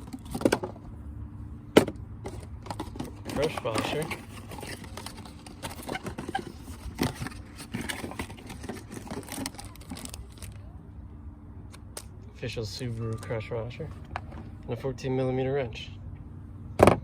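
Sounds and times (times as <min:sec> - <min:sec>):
packaging rustling: 0:02.3 - 0:10.6.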